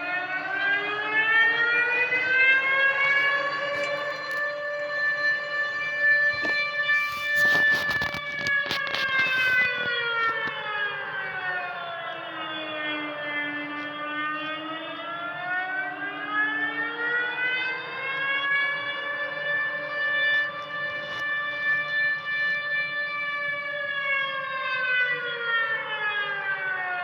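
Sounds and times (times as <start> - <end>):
warning siren wailing: 0.0 - 27.0
crackling: 2.9 - 10.6.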